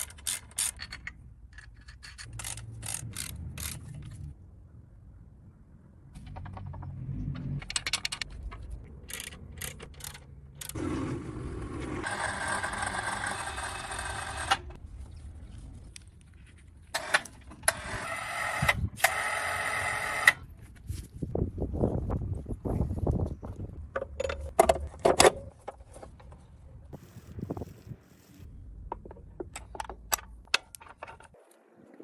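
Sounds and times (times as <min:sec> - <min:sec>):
hand tool clicks and knocks: 0:06.2 - 0:10.8, 0:28.8 - 0:31.4.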